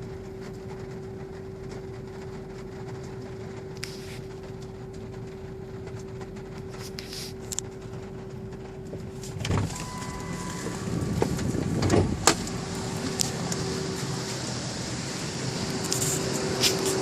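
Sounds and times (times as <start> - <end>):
engine rumble: 0.0 - 17.0
steady hum: 0.2 - 17.0
sharp engine knocks: 9.3 - 13.2.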